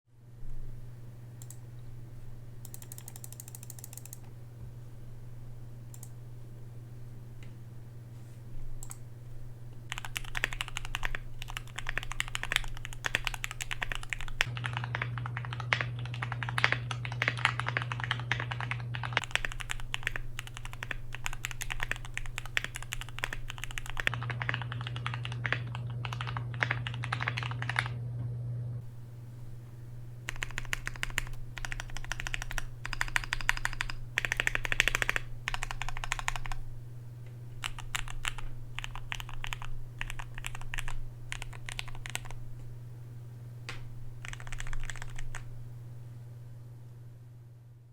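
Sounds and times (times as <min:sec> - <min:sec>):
steady low hum: 0:00.1 - 0:47.9
mechanical keyboard typing: 0:02.6 - 0:04.4, 0:05.9 - 0:06.2, 0:08.7 - 0:09.1, 0:09.8 - 0:27.9, 0:30.2 - 0:36.7, 0:37.6 - 0:42.6, 0:43.7 - 0:45.6.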